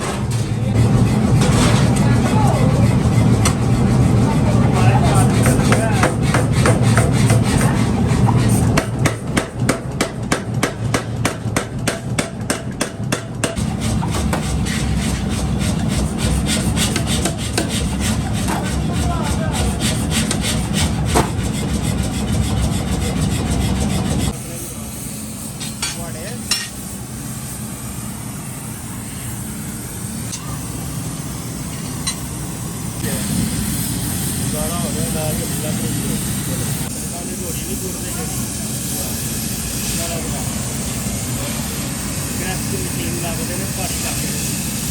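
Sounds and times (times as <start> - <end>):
metal rasping strokes: 0.8 - 10.2, 12.2 - 24.5.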